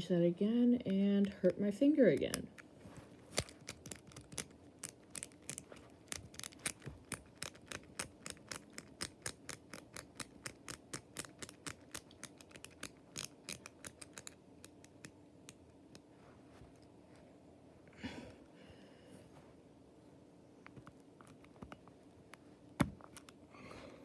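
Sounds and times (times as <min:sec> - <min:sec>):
combination lock wheels clicking: 0:03.4 - 0:15.1.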